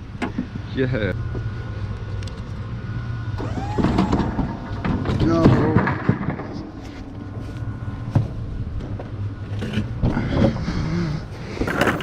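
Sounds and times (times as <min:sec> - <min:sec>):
scraping: 0:11.6 - 0:12.0.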